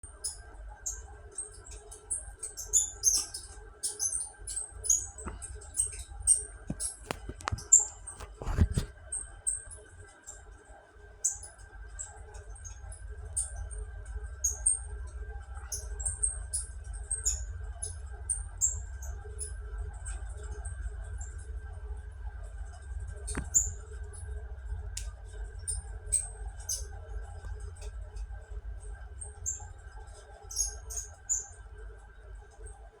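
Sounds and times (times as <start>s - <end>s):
fan squeaks and chirps: 0.1s - 32.8s.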